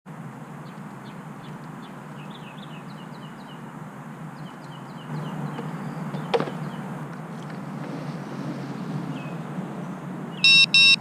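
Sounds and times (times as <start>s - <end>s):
bird chirping: 0.4s - 7.0s, 9.1s - 11.0s.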